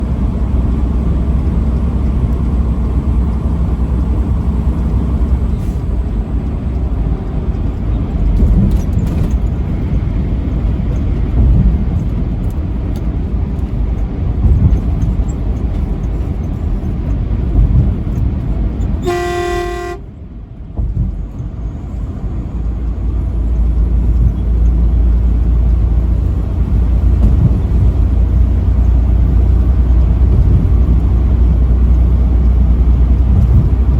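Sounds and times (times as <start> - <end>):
truck engine and road rumble: 0.0 - 33.9
truck horn blast: 19.0 - 20.1.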